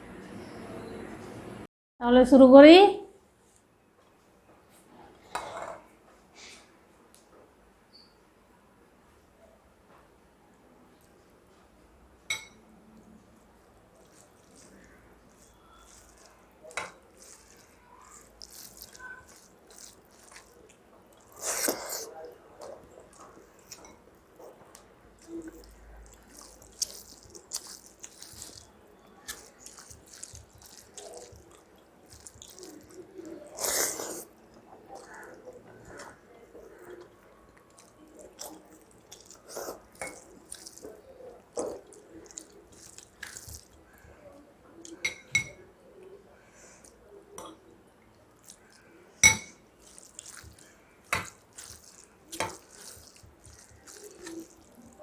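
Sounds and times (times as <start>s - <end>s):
wet eating by hand: 13.8s - 45.0s, 46.0s - 55.0s
small squelches and clicks: 22.6s - 33.6s, 49.7s - 55.0s.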